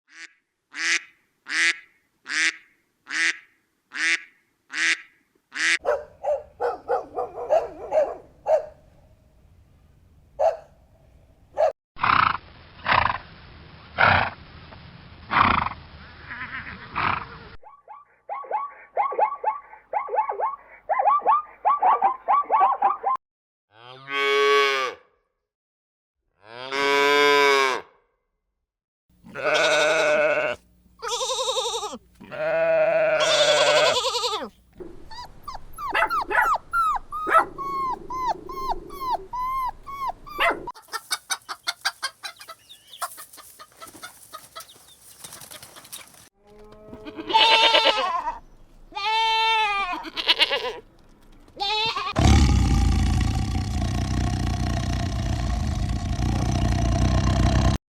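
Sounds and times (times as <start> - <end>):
livestock bleating: 29.2 - 34.5, 46.4 - 50.8, 51.6 - 52.2
rapid short chirping calls: 35.1 - 46.1.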